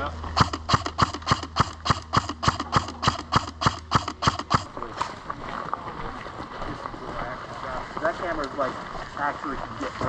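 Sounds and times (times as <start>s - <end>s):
airsoft gun single shots: 0.4s - 4.7s.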